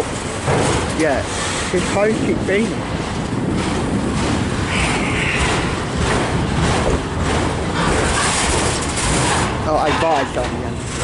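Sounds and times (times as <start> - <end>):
train wheels rumbling over rails: 0.0 - 11.0.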